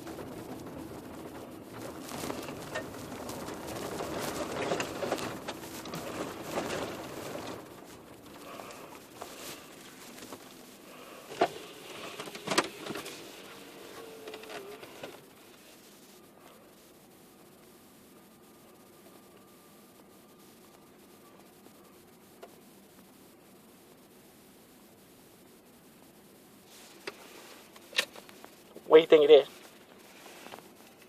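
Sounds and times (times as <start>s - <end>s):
car road noise: 0.0s - 23.3s.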